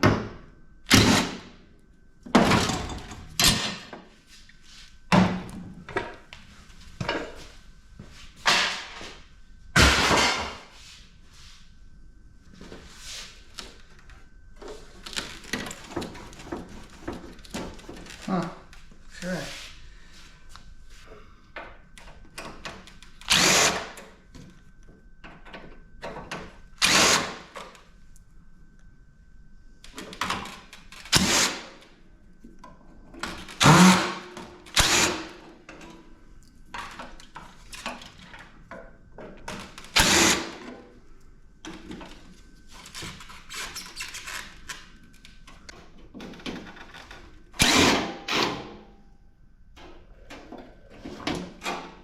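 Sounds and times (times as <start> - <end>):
power drill spinning: 23.3 - 23.9, 26.8 - 27.4, 31.1 - 31.7, 33.5 - 35.4, 39.9 - 40.6, 47.6 - 48.5.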